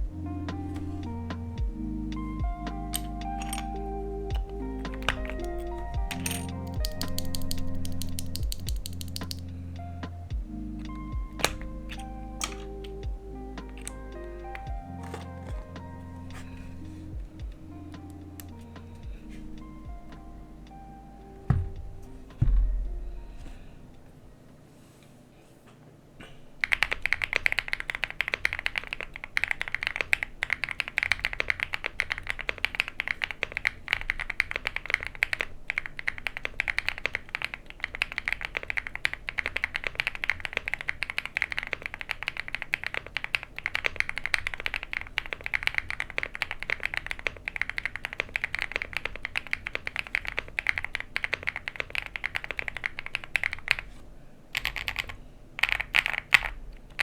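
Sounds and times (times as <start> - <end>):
mechanical keyboard typing: 2.7 - 9.6, 10.9 - 16.5, 26.6 - 54.0, 54.6 - 57.0.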